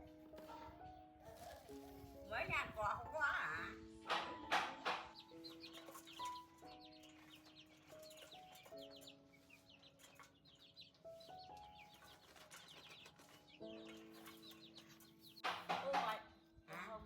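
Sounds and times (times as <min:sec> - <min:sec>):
soft background music: 0:00.0 - 0:17.0
chickens chirping: 0:03.9 - 0:16.5.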